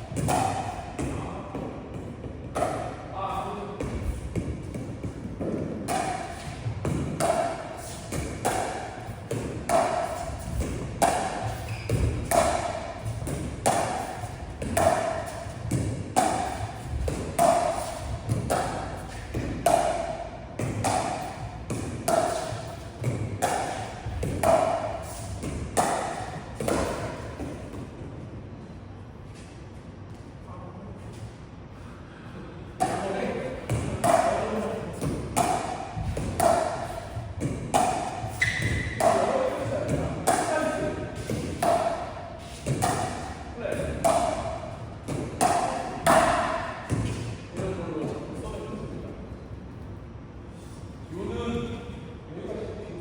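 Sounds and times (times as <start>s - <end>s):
paddle hitting plastic ball: 4.4s - 27.5s, 32.8s - 43.3s.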